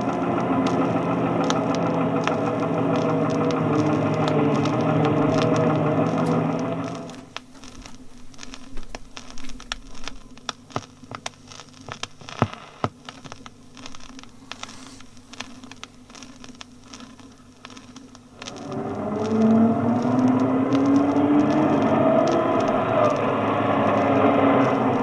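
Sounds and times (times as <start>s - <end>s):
bus engine idling: 0.0s - 7.4s, 18.4s - 25.0s.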